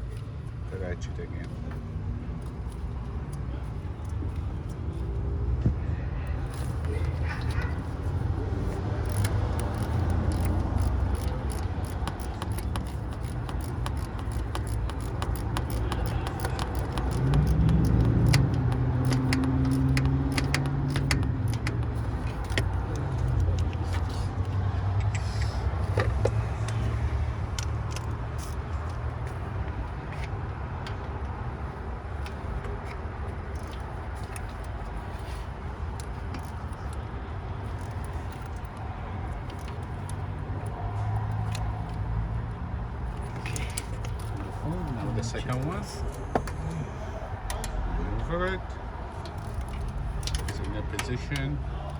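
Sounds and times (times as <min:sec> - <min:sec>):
hand ratchet clicking: 0:07.8 - 0:28.9, 0:35.9 - 0:37.0, 0:37.7 - 0:42.1, 0:43.1 - 0:45.7, 0:49.2 - 0:51.5.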